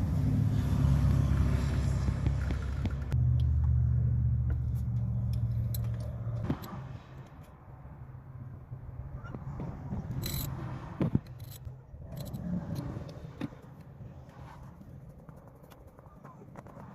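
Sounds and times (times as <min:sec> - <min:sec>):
light metallic clicks and jingles: 0:05.2 - 0:06.4, 0:10.1 - 0:10.6.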